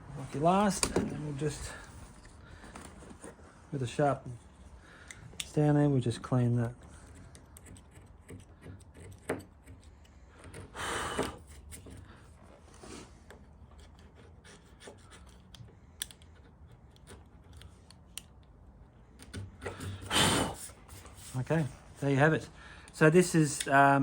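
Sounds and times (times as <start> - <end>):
chisel scraping wood: 6.9 - 12.2, 12.9 - 15.7.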